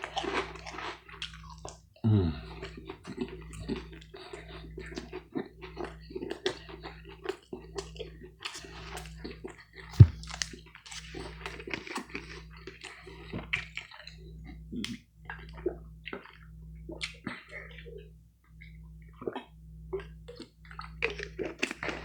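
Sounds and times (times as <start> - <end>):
close chewing with wet smacking: 0.0 - 2.0, 2.6 - 18.0, 18.6 - 22.0.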